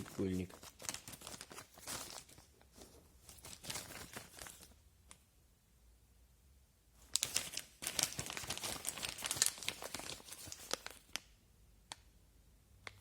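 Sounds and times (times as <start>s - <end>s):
plastic packaging crinkling: 0.0s - 4.8s, 7.0s - 11.3s.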